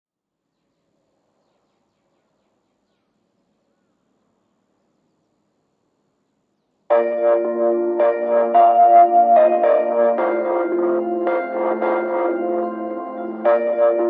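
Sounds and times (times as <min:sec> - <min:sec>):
distant bird chirps: 0:00.4 - 0:06.9.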